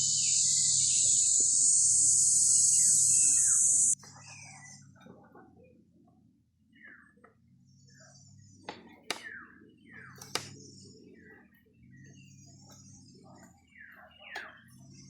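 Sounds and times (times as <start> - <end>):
insect hiss: 0.0 - 4.0
faint bird chirps: 0.0 - 5.8, 6.7 - 15.0.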